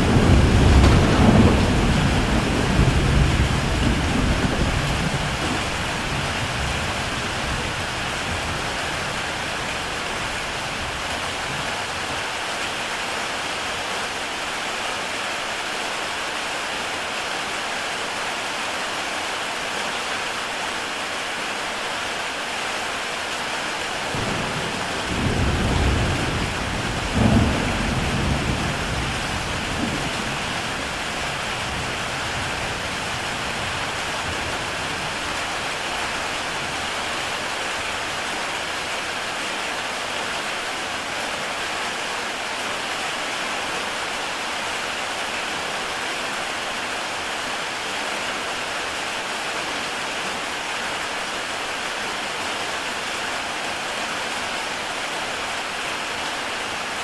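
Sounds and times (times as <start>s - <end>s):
thunder rumbling: 0.0s - 8.8s, 24.1s - 35.8s
heavy rain on a tile roof: 0.0s - 57.0s.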